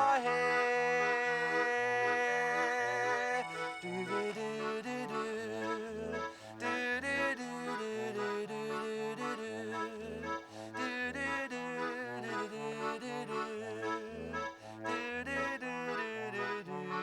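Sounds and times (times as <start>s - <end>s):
concertina playing: 2.7s - 4.9s.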